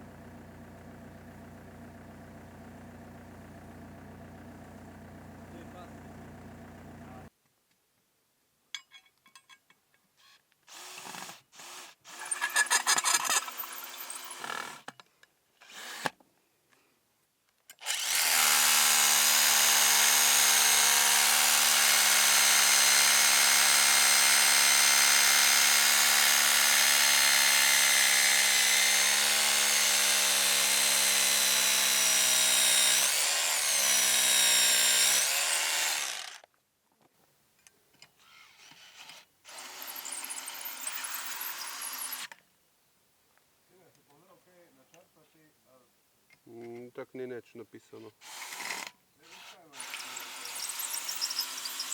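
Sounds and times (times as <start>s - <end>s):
power tool motor whining: 17.8s - 36.4s, 48.3s - 51.9s.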